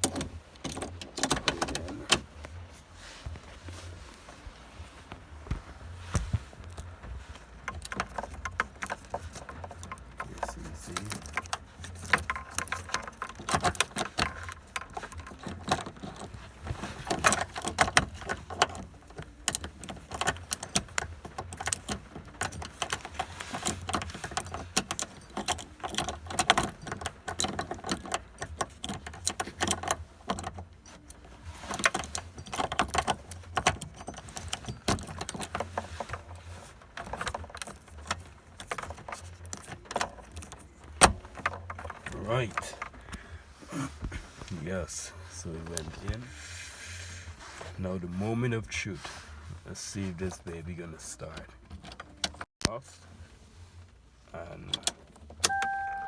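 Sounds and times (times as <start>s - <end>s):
metal clicks and knocks: 0.0s - 2.3s, 6.2s - 43.2s.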